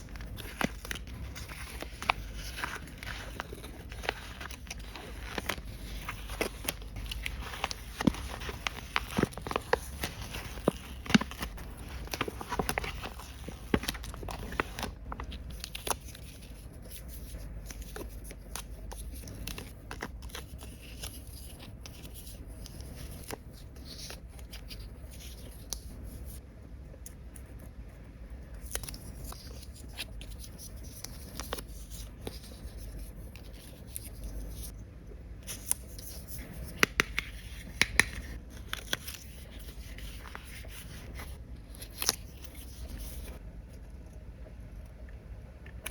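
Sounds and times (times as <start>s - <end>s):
packaging rustling and tearing: 0.0s - 16.8s.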